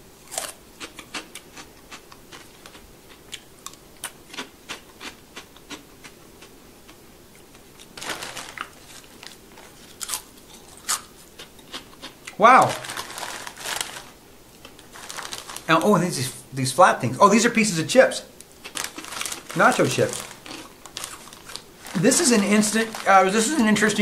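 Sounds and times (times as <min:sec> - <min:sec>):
crunchy snack being chewed: 0:00.2 - 0:15.7, 0:18.6 - 0:23.7
snack bag rustling: 0:07.4 - 0:16.3, 0:18.5 - 0:24.0.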